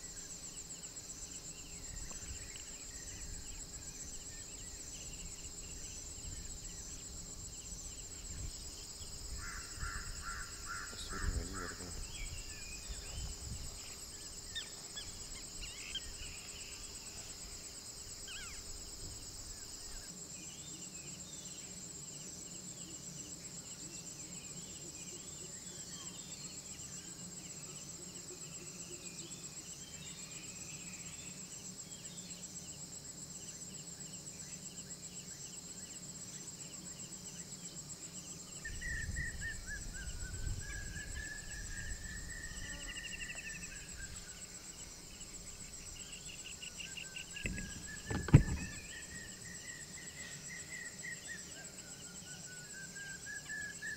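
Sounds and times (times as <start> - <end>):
insects chorus: 0.0 - 53.9
bump: 47.4 - 49.0.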